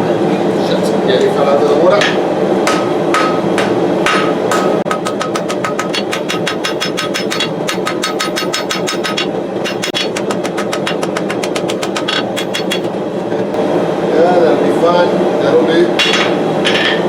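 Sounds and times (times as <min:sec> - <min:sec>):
gas forge burner roar: 0:00.0 - 0:17.0
hammer ringing on steel anvil: 0:02.0 - 0:13.5.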